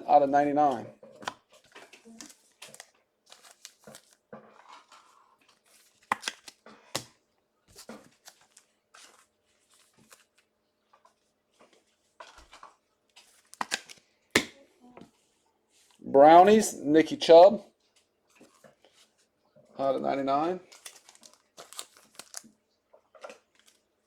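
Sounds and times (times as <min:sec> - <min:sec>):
cards rustling and clicking: 0:00.7 - 0:14.6, 0:20.4 - 0:24.0.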